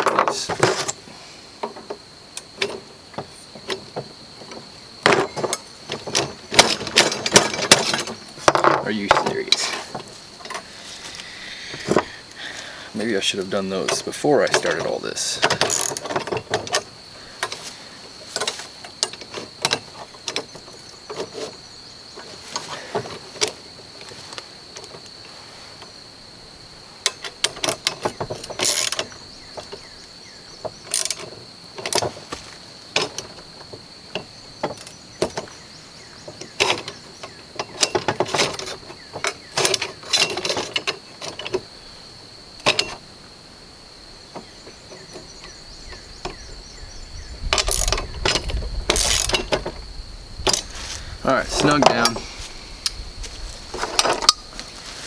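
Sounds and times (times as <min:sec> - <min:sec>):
metal tools clicking and clanking: 0:05.0 - 0:10.6, 0:13.2 - 0:17.6, 0:36.5 - 0:41.6, 0:47.6 - 0:49.7, 0:51.5 - 0:52.3, 0:53.8 - 0:54.5.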